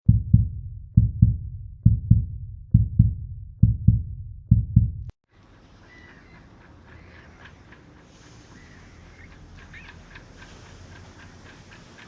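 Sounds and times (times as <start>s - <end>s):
heartbeat thumps: 0.0s - 5.1s
faint background hiss: 5.4s - 12.0s
light chirps: 5.4s - 12.0s.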